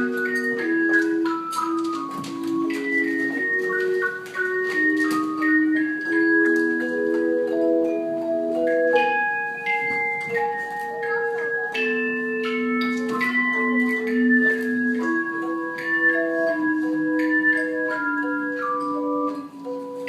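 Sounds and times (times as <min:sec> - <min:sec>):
tone chimes playing a melody: 0:00.0 - 0:20.0.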